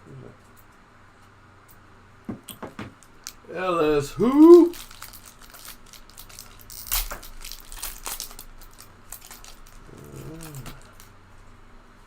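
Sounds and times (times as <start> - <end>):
foil wrapper crinkling and tearing: 3.0 - 11.1.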